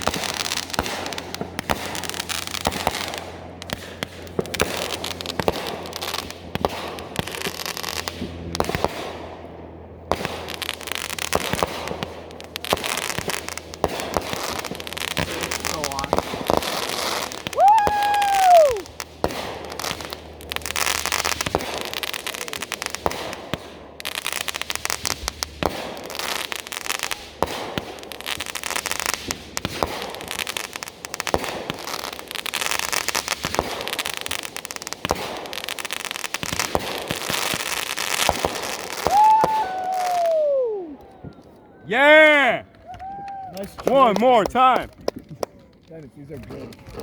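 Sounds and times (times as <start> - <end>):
fireworks crackling and popping: 0.0 - 47.0.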